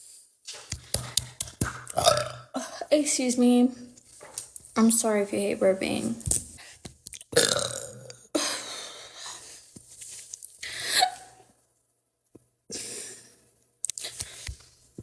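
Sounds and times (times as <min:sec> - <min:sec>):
woman hiccupping: 0:00.8 - 0:02.9, 0:07.3 - 0:08.5.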